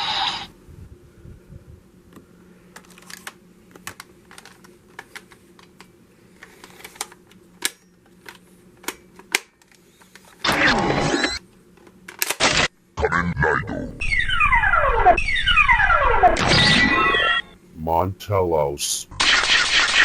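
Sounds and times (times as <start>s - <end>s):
faint low hum: 17.5s - 19.2s.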